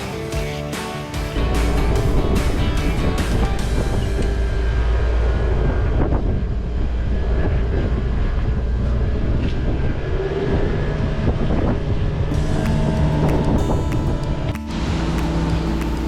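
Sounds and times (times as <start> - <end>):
low mechanical engine rumble: 1.4 - 16.0.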